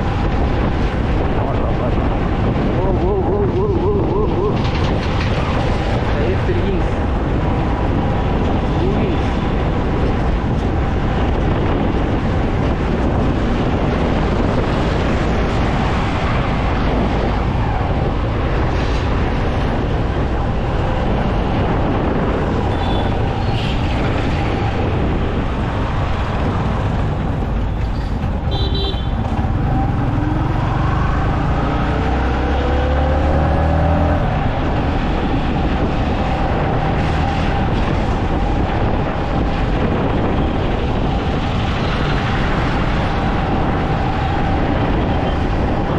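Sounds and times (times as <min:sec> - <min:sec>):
road traffic rumble: 0:00.0 - 0:45.9
car horn beeps: 0:28.5 - 0:29.2
engine revving: 0:29.1 - 0:34.8.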